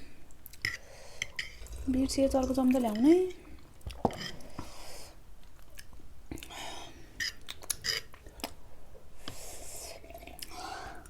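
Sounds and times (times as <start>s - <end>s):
chewing and wet mouth noises: 5.4s - 6.6s, 7.2s - 8.6s.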